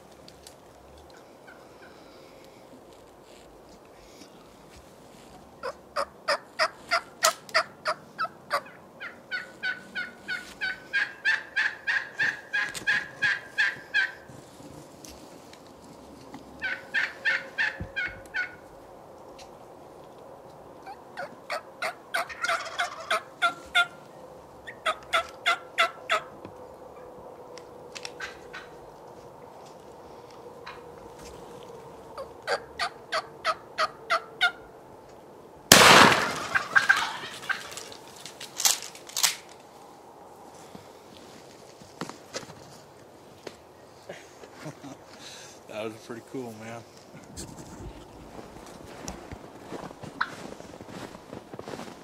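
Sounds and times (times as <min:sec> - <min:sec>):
turkey yelping: 0:05.6 - 0:14.2, 0:16.6 - 0:18.6, 0:20.8 - 0:24.0, 0:24.6 - 0:26.3, 0:28.1 - 0:28.8, 0:32.2 - 0:34.7, 0:35.7 - 0:37.9.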